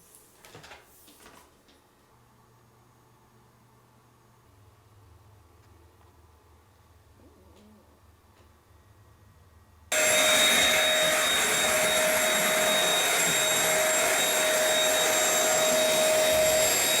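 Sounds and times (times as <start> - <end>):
stick vacuum running: 9.9 - 17.0.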